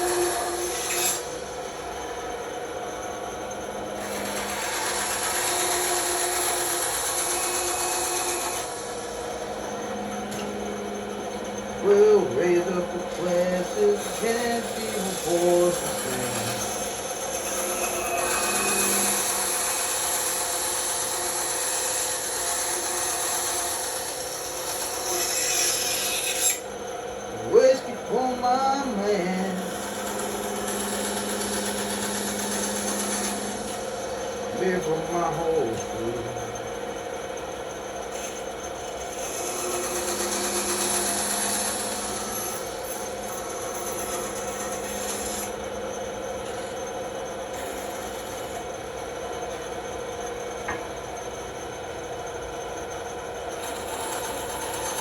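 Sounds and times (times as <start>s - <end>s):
bandsaw cutting wood: 0.0s - 1.4s, 4.0s - 9.1s, 11.8s - 26.6s, 27.5s - 36.5s, 38.9s - 45.6s, 53.6s - 55.0s
blade hissing in cut: 0.0s - 1.4s, 11.8s - 26.6s, 27.6s - 36.2s, 39.2s - 45.6s
motor hum: 0.0s - 55.0s.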